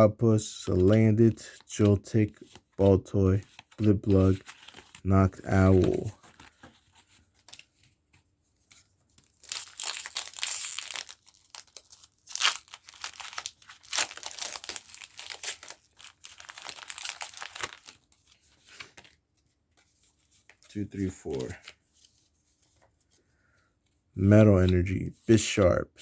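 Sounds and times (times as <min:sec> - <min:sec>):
foil wrapper crinkling and tearing: 0:09.2 - 0:19.1.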